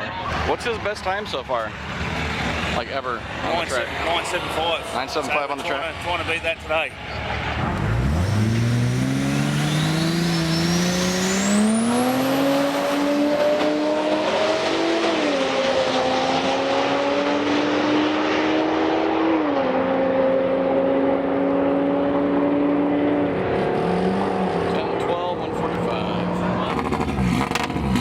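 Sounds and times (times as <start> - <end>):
race car engine accelerating: 5.4 - 28.0.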